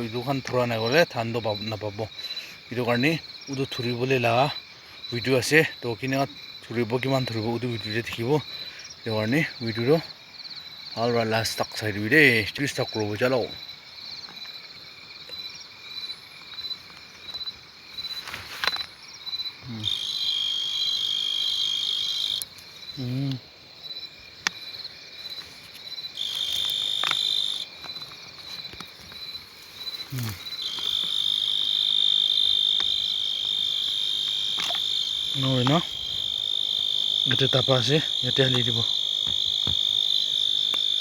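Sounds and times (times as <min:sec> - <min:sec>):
insects trilling: 0:00.0 - 0:41.0
loud high insect buzz: 0:19.6 - 0:23.3, 0:25.4 - 0:27.8, 0:29.2 - 0:41.0.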